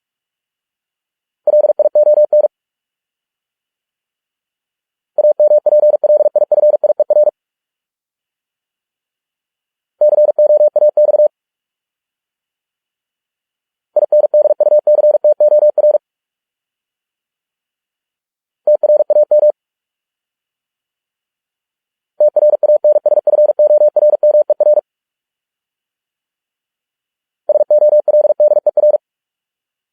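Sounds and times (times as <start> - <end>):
morse code beeps: 14.1 - 16.0, 18.7 - 19.5, 22.2 - 24.8, 27.5 - 29.0.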